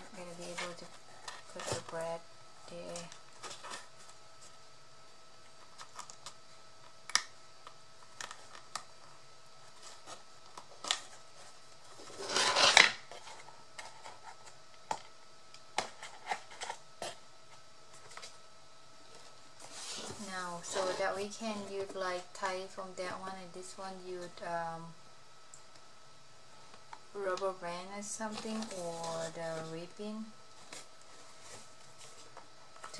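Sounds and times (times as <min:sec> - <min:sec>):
scratchy paper rustle: 0:19.1 - 0:22.1, 0:28.2 - 0:32.9.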